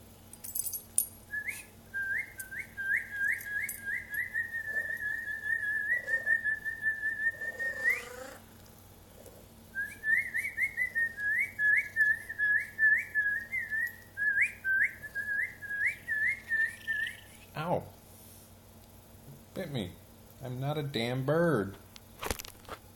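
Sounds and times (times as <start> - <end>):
person whistling bird imitation: 1.3 - 8.3, 9.8 - 17.3.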